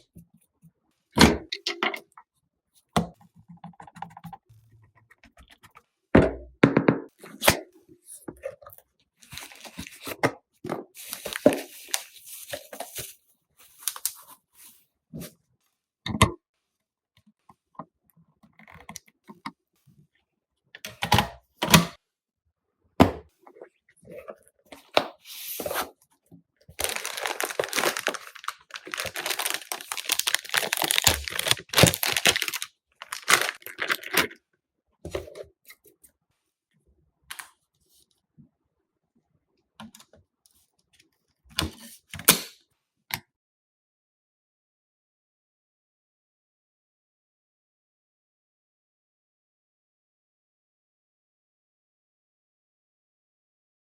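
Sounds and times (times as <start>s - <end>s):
tearing and crinkling packaging: 9.2s - 10.2s, 11.0s - 14.4s, 26.7s - 34.4s.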